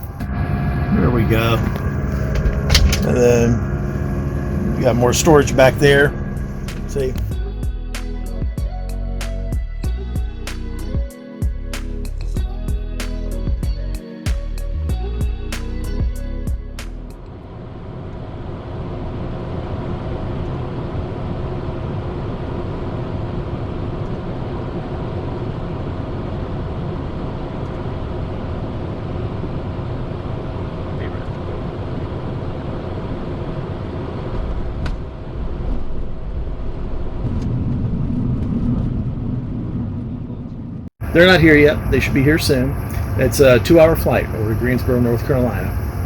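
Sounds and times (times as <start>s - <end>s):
faint hum tones: 0.0s - 9.3s, 39.3s - 46.0s
machine low rumble: 0.0s - 11.6s, 14.8s - 46.0s.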